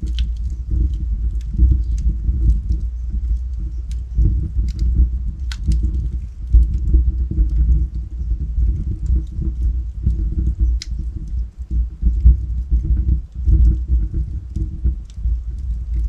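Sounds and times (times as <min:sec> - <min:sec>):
fire roaring: 0:00.0 - 0:16.0
wood crackling and popping: 0:00.0 - 0:16.0.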